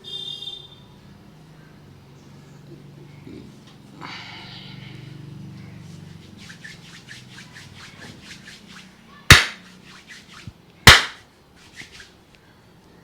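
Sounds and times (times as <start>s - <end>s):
hands rubbing and patting head: 6.4s - 9.6s, 10.9s - 11.2s
hands smacking head: 9.3s - 9.6s, 10.9s - 11.2s.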